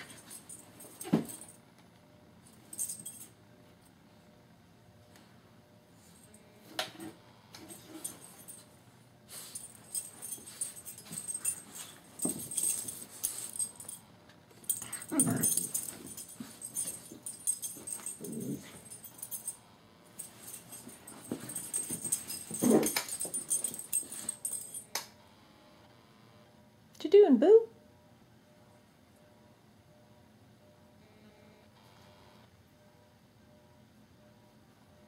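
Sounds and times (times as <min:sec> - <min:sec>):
puppy scrabbling with pillow: 0:10.0 - 0:13.7, 0:20.2 - 0:24.7.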